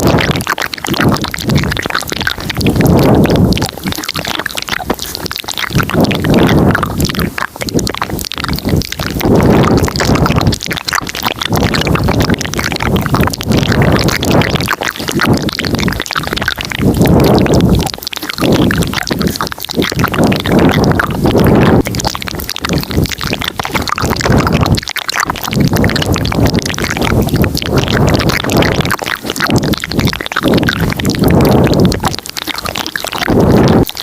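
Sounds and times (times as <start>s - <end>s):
mouth clicks close to microphone: 0.0s - 34.0s.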